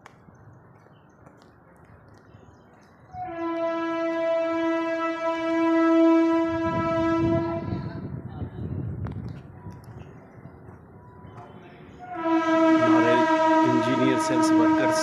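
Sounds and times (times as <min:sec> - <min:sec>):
long horn blast: 0:03.1 - 0:08.2, 0:12.0 - 0:15.0.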